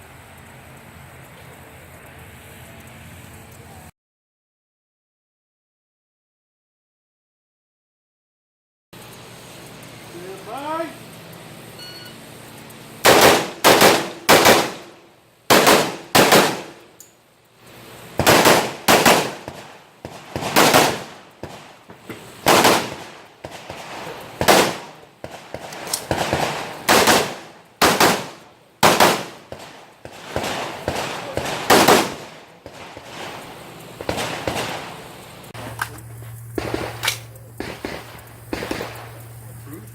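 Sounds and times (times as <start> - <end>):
rifle shots: 13.0 - 16.9, 18.1 - 36.0, 36.6 - 39.4.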